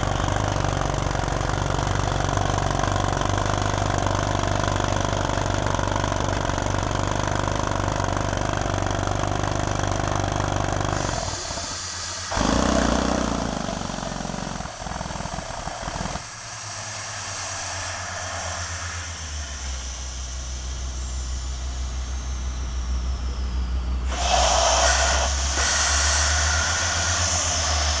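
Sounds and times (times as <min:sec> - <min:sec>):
drill rig engine hum: 0:00.0 - 0:28.0
hissing air: 0:10.9 - 0:28.0.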